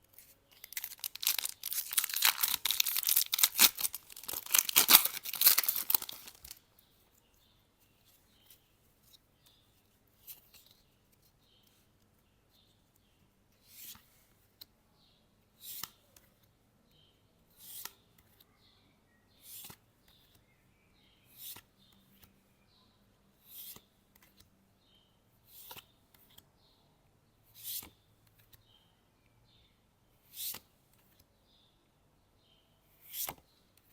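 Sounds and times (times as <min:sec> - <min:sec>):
foil wrapper tearing: 0:00.6 - 0:06.6.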